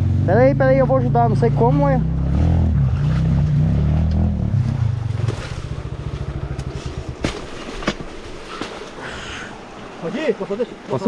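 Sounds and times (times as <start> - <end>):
dirt bike engine revving: 0.0 - 8.0.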